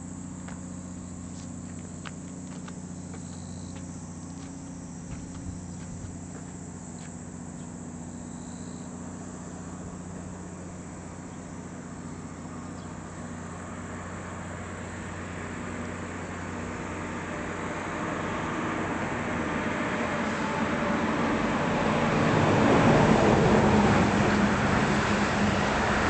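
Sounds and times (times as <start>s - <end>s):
train rumble: 0.0s - 7.9s, 9.1s - 26.0s
insects chirping: 0.0s - 26.0s
steady low hum: 0.0s - 26.0s.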